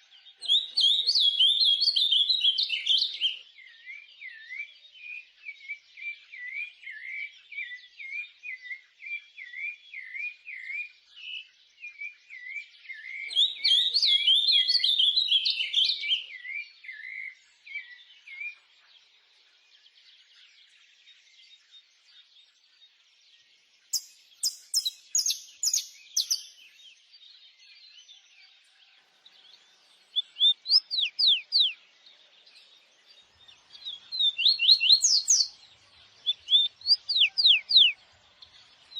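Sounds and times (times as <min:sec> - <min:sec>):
small birds chirping and singing: 0:00.0 - 0:38.9
high bird whistles: 0:24.0 - 0:26.7, 0:30.4 - 0:31.8, 0:34.1 - 0:35.5, 0:36.3 - 0:38.0.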